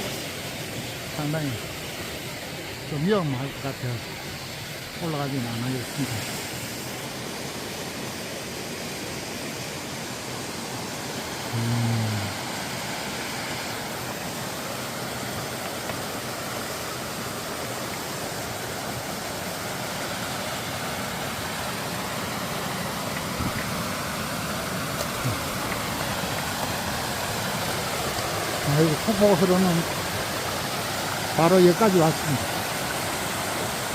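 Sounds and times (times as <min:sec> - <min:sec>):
mountain stream rushing: 0:00.0 - 0:33.9
low voice: 0:11.5 - 0:12.4.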